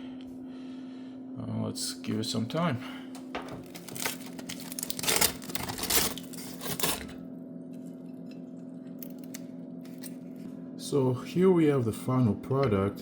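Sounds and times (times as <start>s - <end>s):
steady low hum: 0.0s - 13.0s
kitchen clattering and scraping: 3.4s - 7.2s.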